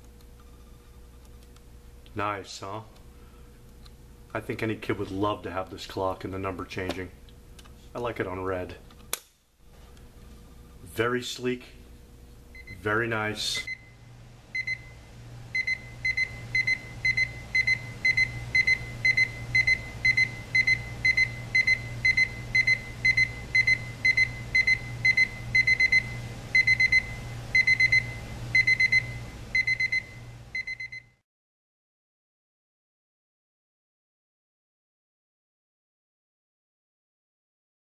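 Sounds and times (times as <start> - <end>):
low steady hum: 0.0 - 31.2
alarm clock beeping: 14.6 - 31.2.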